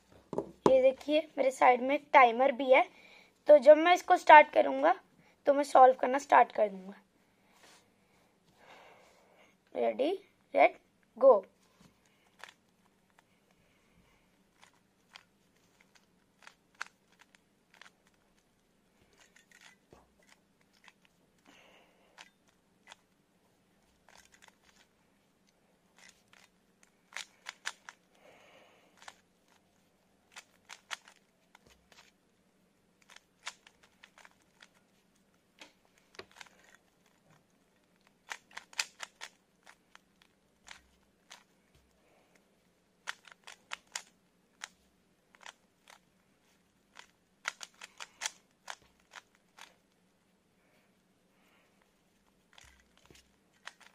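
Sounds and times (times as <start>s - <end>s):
puzzle cube layer turns rasping: 11.8s - 23.2s, 23.8s - 25.0s, 25.9s - 32.2s, 33.0s - 42.0s, 43.0s - 50.0s, 52.2s - 53.9s
puzzle cube plastic clicks: 12.0s - 13.3s, 14.5s - 18.5s, 19.1s - 23.1s, 23.9s - 24.9s, 25.9s - 28.3s, 28.9s - 32.2s, 33.0s - 34.8s, 35.6s - 41.5s, 43.0s - 49.8s, 52.4s - 53.9s.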